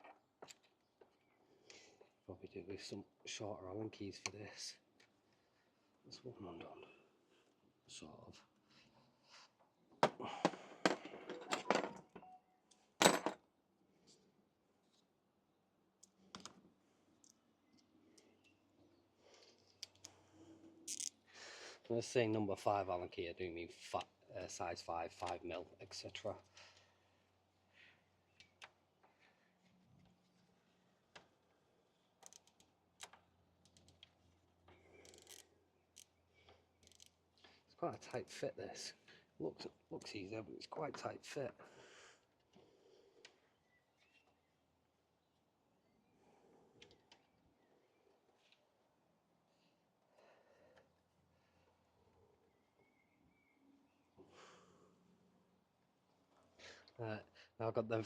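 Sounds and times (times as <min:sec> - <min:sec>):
allen key clicking on bolts: 0:36.8 - 0:37.1.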